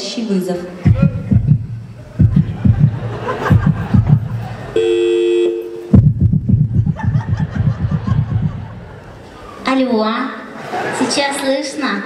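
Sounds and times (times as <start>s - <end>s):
people laughing: 0.9s - 4.8s, 6.7s - 9.6s, 10.4s - 11.6s.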